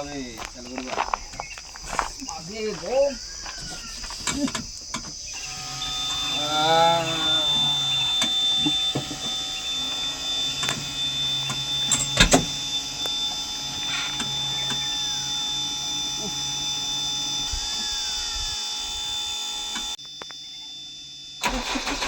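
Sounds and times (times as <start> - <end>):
high whine: 4.0 - 22.0
low mechanical hum: 4.8 - 21.9.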